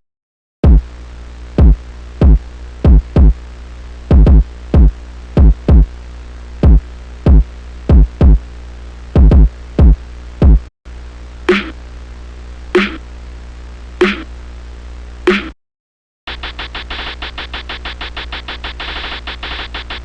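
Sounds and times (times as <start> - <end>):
booming drum machine kicks: 0.6 - 0.8, 1.6 - 3.4, 4.1 - 5.9, 6.6 - 8.4, 9.2 - 10.7, 11.5 - 11.7, 12.8 - 13.0, 14.0 - 14.3, 15.3 - 15.6.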